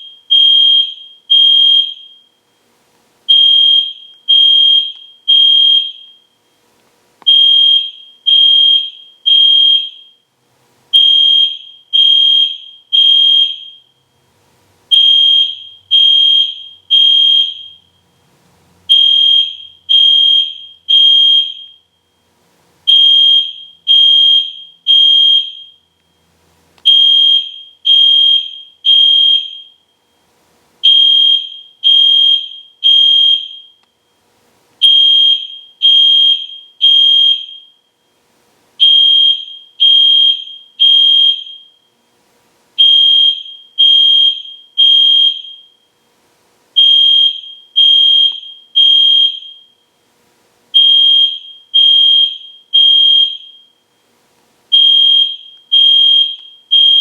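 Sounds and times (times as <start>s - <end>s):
fire alarm horn blasts: 0.0s - 2.4s, 3.3s - 6.4s, 7.3s - 10.3s, 10.9s - 13.9s, 14.9s - 18.2s, 18.9s - 22.2s, 22.9s - 25.8s, 26.8s - 30.2s, 30.8s - 34.2s, 34.8s - 38.1s, 38.8s - 41.9s, 42.8s - 45.9s, 46.8s - 49.9s, 50.7s - 53.9s, 54.7s - 57.0s.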